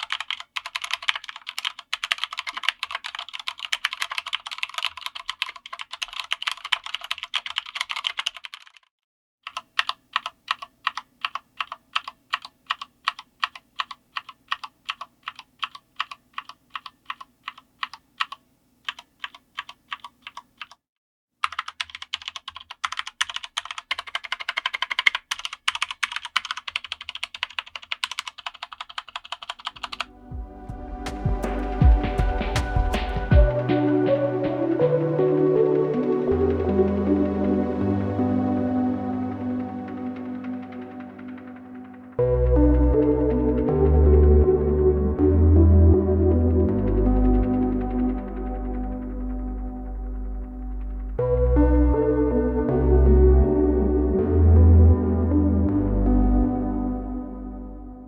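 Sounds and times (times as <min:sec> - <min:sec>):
typing on mechanical keyboard: 0:00.0 - 0:20.8, 0:21.4 - 0:30.1, 0:39.4 - 0:42.2.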